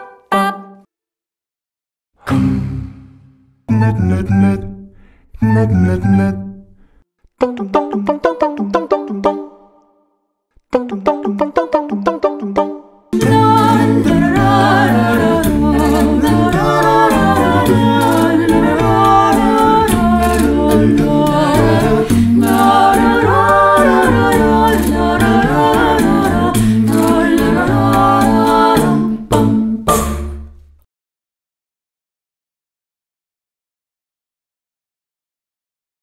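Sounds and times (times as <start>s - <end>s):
vocal clicks beat: 13.2s - 30.3s
a cappella group singing: 13.2s - 30.4s
sung bass line: 13.2s - 30.6s.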